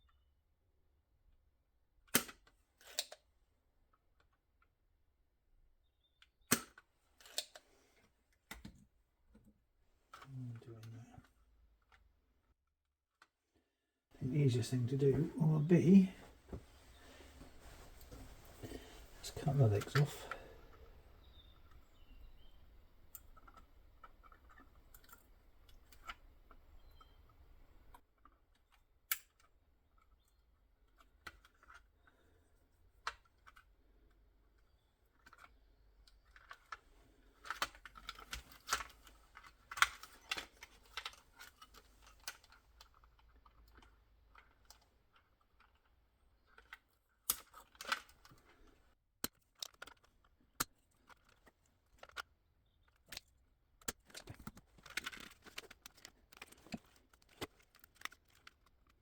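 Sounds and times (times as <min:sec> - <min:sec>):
small clicking and rattling: 0:16.9 - 0:32.4, 0:33.0 - 0:59.0.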